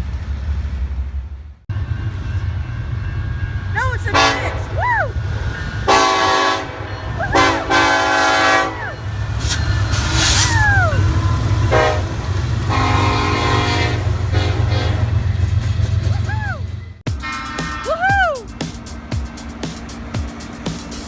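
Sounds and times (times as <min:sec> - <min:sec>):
diesel train engine rumble: 0:00.0 - 0:21.0
train air horn blasts: 0:04.1 - 0:04.8, 0:05.9 - 0:15.2, 0:17.1 - 0:18.1.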